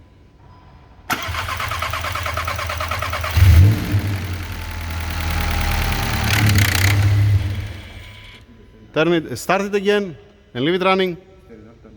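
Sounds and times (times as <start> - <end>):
engine starting and running: 1.1 - 8.4
starter motor cranking: 1.1 - 8.4.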